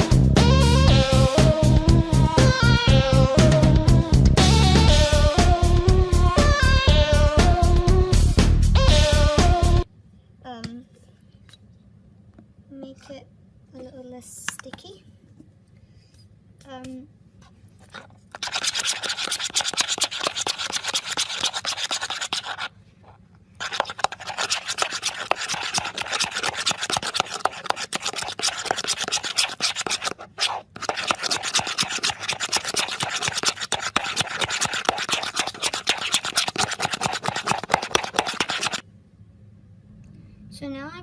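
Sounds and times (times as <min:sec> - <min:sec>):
slime stirred in a bowl: 0:17.8 - 0:38.8.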